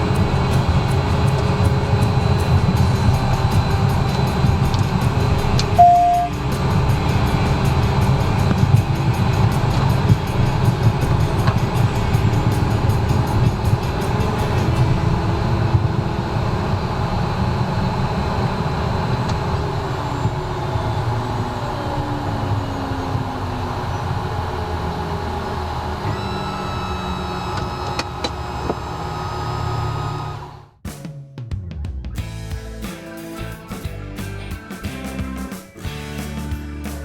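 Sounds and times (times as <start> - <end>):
jet engines rumbling: 0.0 - 26.0.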